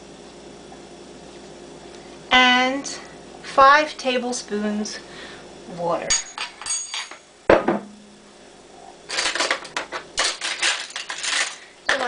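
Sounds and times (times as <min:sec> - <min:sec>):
cutlery clattering: 0:06.1 - 0:07.2, 0:09.1 - 0:12.0
metal clank with ring: 0:06.1 - 0:07.2.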